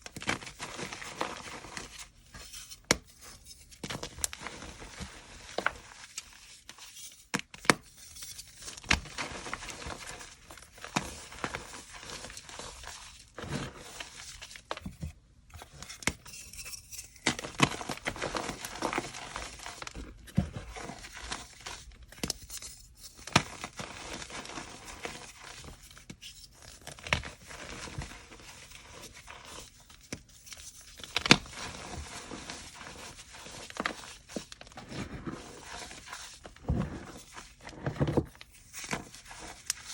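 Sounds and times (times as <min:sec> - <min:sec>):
chalk crunching gritty crackle: 0:17.2 - 0:22.4, 0:31.1 - 0:39.9.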